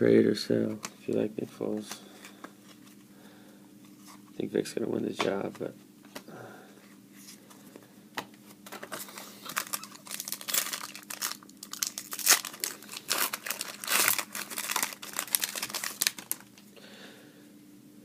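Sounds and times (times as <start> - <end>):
plastic wrapper tearing and crinkling: 8.8 - 16.7.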